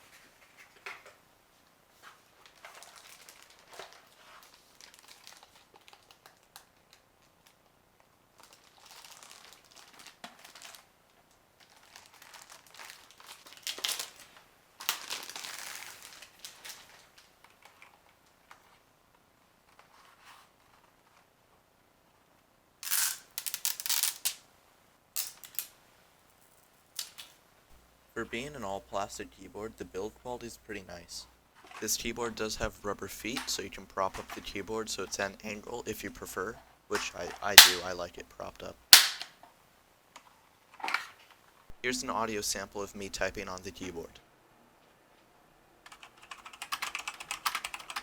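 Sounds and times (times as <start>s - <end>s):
packaging crinkling: 2.4s - 7.6s, 8.4s - 10.9s, 11.6s - 18.0s, 22.8s - 24.4s.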